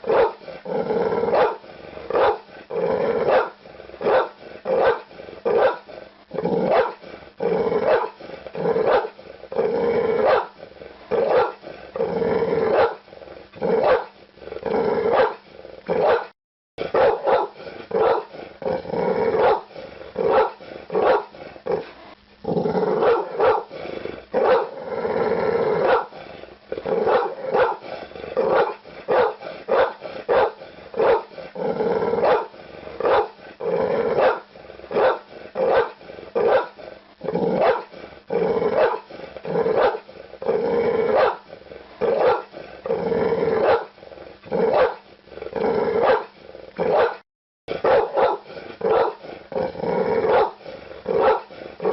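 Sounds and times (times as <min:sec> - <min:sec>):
dog barking: 0:00.0 - 0:00.4, 0:01.3 - 0:02.4, 0:03.3 - 0:05.9, 0:06.7 - 0:07.0, 0:07.9 - 0:08.2, 0:08.8 - 0:09.2, 0:10.2 - 0:10.6, 0:11.2 - 0:11.6, 0:12.7 - 0:13.0, 0:13.8 - 0:14.1, 0:15.1 - 0:15.4, 0:16.0 - 0:16.3, 0:16.9 - 0:18.3, 0:19.4 - 0:19.7, 0:20.3 - 0:21.3, 0:23.0 - 0:23.7, 0:24.4 - 0:24.8, 0:25.8 - 0:26.1, 0:27.0 - 0:27.8, 0:28.4 - 0:31.3, 0:32.2 - 0:33.4, 0:34.2 - 0:36.8, 0:37.6 - 0:37.9, 0:38.8 - 0:39.1, 0:39.7 - 0:40.0, 0:41.1 - 0:41.4, 0:42.0 - 0:42.5, 0:43.6 - 0:43.9, 0:44.7 - 0:45.0, 0:46.0 - 0:46.3, 0:46.9 - 0:47.2, 0:47.8 - 0:49.2, 0:50.3 - 0:50.6, 0:51.2 - 0:51.5.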